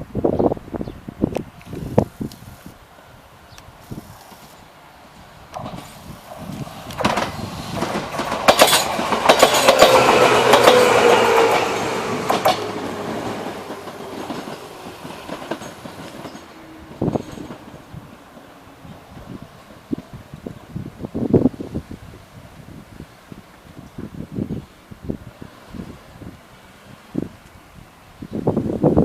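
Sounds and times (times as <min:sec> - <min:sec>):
train wheels clattering over rail joints: 0:05.5 - 0:20.2.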